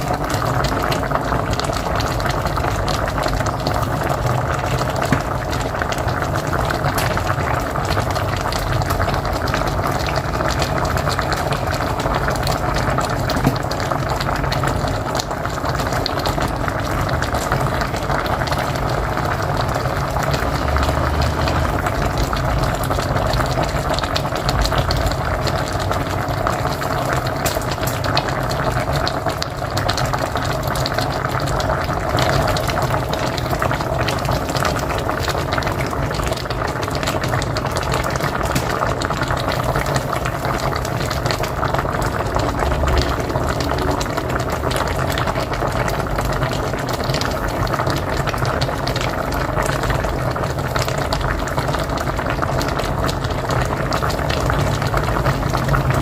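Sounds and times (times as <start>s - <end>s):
pot boiling with bubbling: 0.0s - 56.0s
low rumble: 18.2s - 26.4s, 38.1s - 47.0s.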